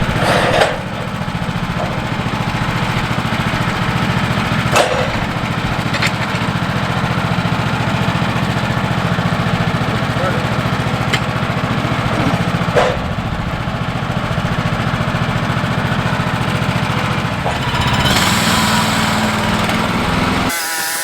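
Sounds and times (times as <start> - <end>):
sharp knocks: 0.0 - 6.7, 11.0 - 21.0
sawmill engine running: 0.0 - 21.0.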